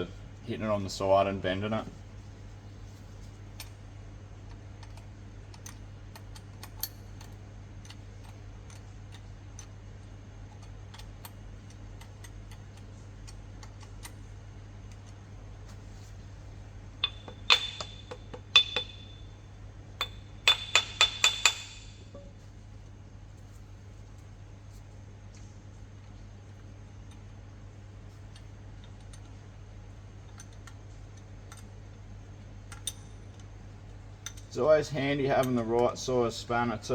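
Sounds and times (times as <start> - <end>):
low hum: 15.4 - 24.2
hammer tapping metal: 17.0 - 19.4, 20.0 - 22.3.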